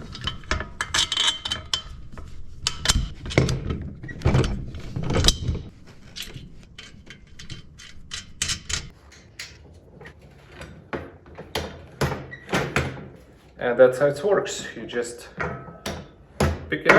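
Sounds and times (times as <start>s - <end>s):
heavy metal knocks: 11.0s - 13.2s, 14.6s - 16.9s.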